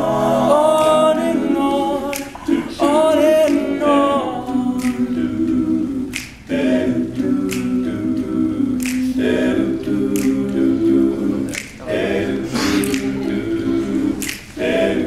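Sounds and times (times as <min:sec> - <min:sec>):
male a cappella singing: 0:00.0 - 0:15.0
finger snaps: 0:02.0 - 0:02.6, 0:03.4 - 0:03.7, 0:04.8 - 0:06.5, 0:07.4 - 0:10.9, 0:11.5 - 0:11.8, 0:12.6 - 0:13.2, 0:14.2 - 0:14.6.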